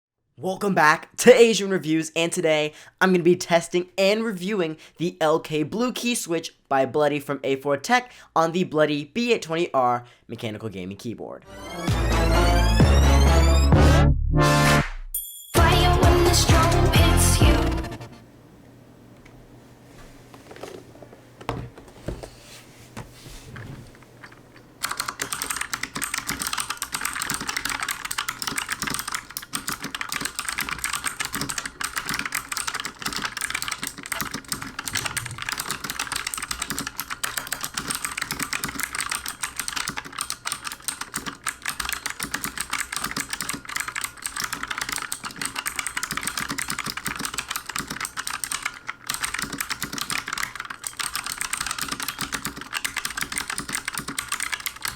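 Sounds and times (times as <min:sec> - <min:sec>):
clicky mechanical keyboard typing: 0:24.0 - 0:54.9.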